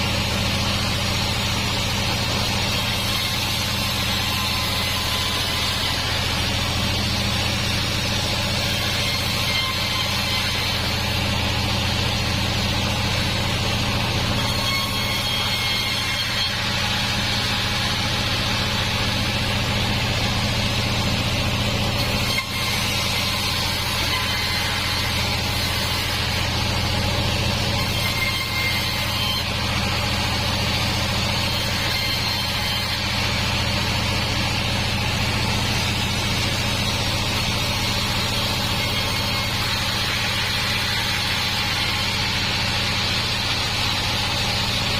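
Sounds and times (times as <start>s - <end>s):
sawmill machine hum: 0.0s - 44.9s.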